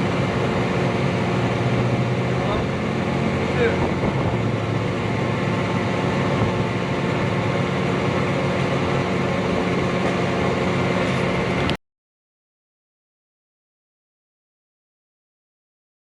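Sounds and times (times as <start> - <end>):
road noise: 0.0 - 11.8
vehicle engine running: 0.0 - 11.8.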